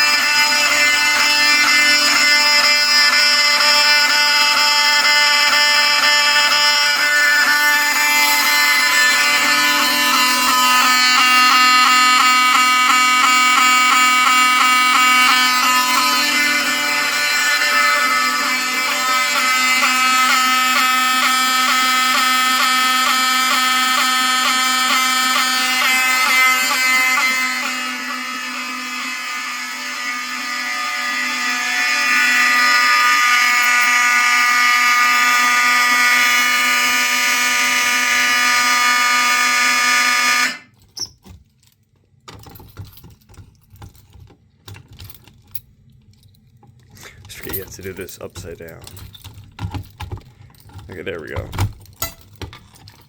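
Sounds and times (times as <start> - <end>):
fire alarm horns blaring: 0.0 - 40.7.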